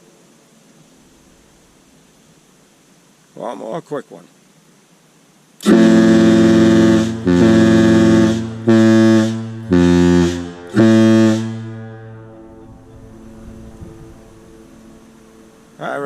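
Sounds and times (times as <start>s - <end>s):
air horn chord blasts: 5.6s - 15.9s.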